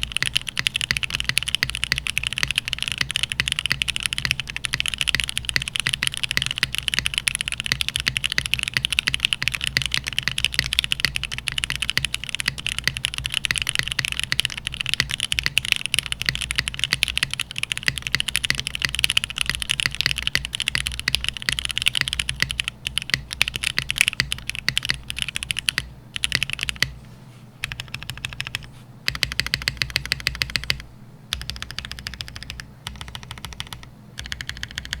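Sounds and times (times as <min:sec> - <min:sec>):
mechanical keyboard typing: 0:00.0 - 0:27.0, 0:27.6 - 0:35.0.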